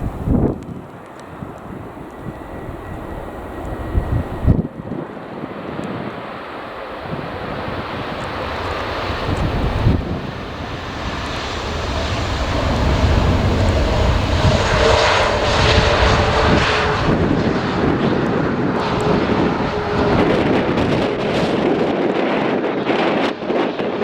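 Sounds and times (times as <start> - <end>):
jet airliner engines roaring: 0.0 - 24.0
thin engine whine: 0.0 - 24.0.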